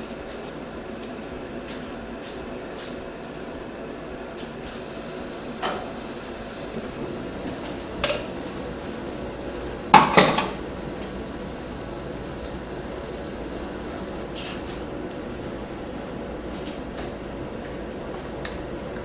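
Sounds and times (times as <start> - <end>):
background hum: 4.6 - 19.0.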